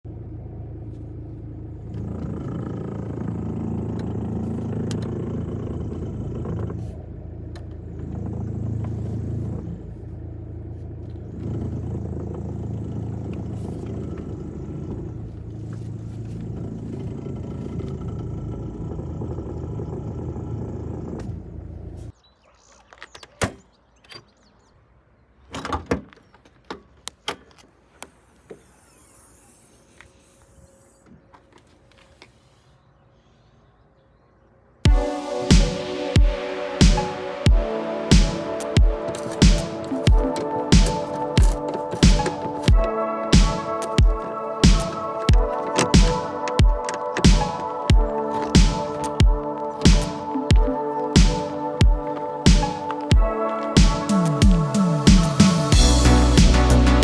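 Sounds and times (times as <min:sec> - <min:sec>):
car engine running: 0:00.0 - 0:22.1, 0:34.9 - 0:57.0
steering noise: 0:00.0 - 0:22.2, 0:35.0 - 0:57.0
clicks and knocks: 0:39.0 - 0:54.1.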